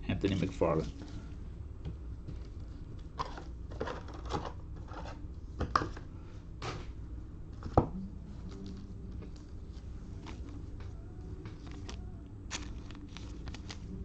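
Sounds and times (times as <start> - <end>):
trading cards rustling and scraping: 2.3 - 5.2, 8.4 - 14.0.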